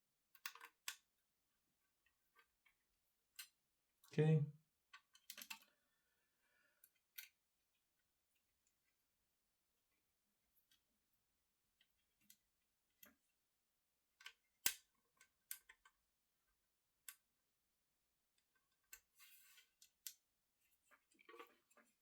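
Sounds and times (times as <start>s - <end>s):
small parts clicking and tapping: 0.3s - 1.1s, 2.1s - 3.6s, 4.9s - 5.8s, 6.8s - 7.4s, 14.2s - 16.0s, 17.0s - 17.4s, 18.3s - 20.3s.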